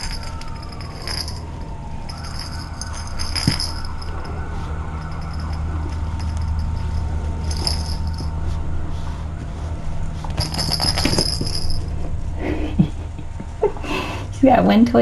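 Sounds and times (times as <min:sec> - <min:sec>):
small bell jingling: 0:00.0 - 0:08.4, 0:10.4 - 0:11.9.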